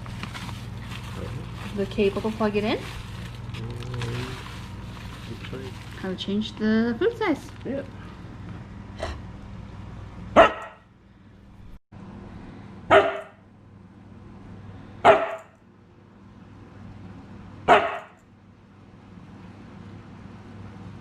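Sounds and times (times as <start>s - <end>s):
dog barking: 10.4s - 10.9s, 12.9s - 13.4s, 15.0s - 15.5s, 17.7s - 18.2s.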